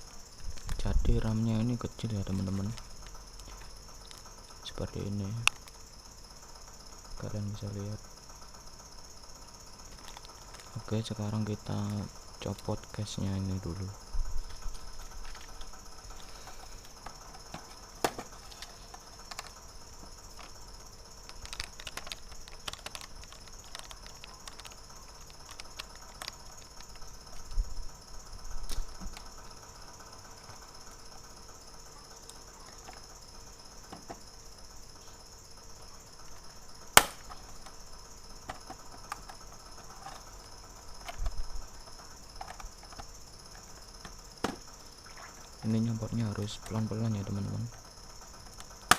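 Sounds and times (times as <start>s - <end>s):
plastic case clicks and ticks: 21.2s - 27.5s
loud sharp plastic snap: 36.9s - 37.4s.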